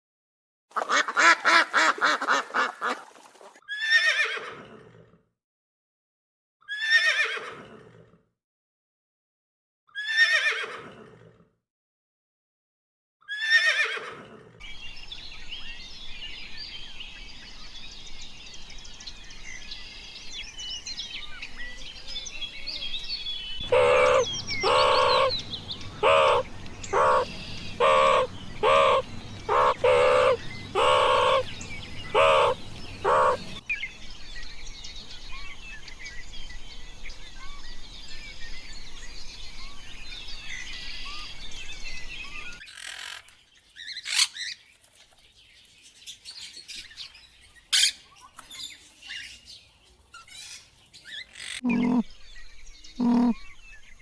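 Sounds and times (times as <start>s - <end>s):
small birds chirping: 14.6s - 42.6s, 43.2s - 54.0s
larger bird calling: 23.5s - 33.6s, 51.4s - 52.2s, 53.0s - 53.6s.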